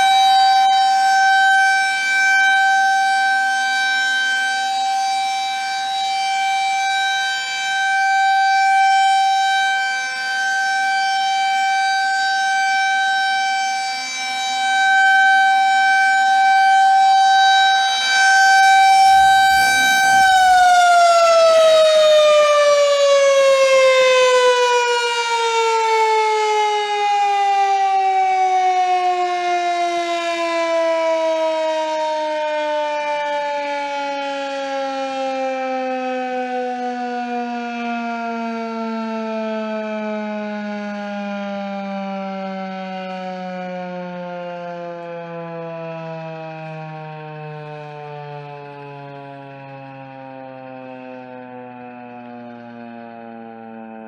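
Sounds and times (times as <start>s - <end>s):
tornado siren steady tone: 0.0s - 54.0s.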